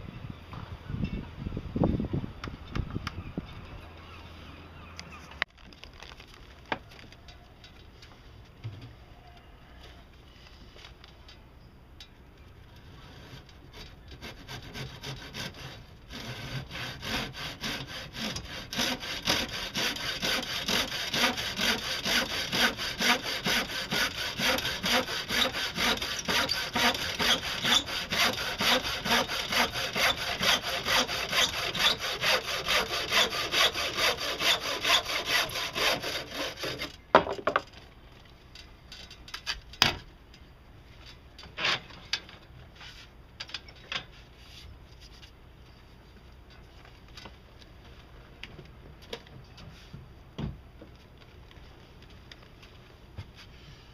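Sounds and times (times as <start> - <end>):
hand saw cutting wood: 13.0 - 37.0.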